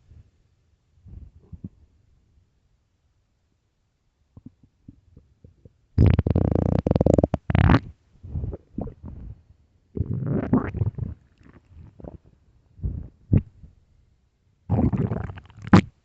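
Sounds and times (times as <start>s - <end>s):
stomach growling and gurgling: 4.4s - 9.4s, 10.0s - 13.5s, 14.7s - 15.9s.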